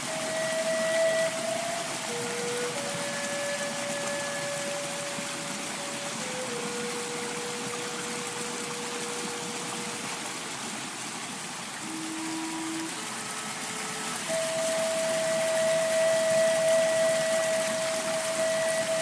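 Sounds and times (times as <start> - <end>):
soft long held tones: 0.0 - 10.7, 11.8 - 19.0
rushing falling water: 0.0 - 19.0.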